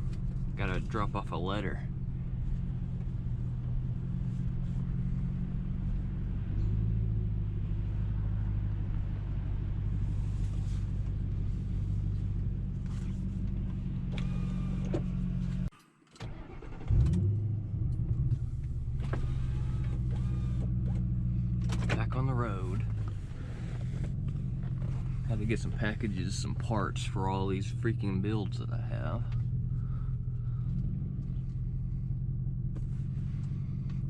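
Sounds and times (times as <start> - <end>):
car engine idling: 0.0 - 34.0.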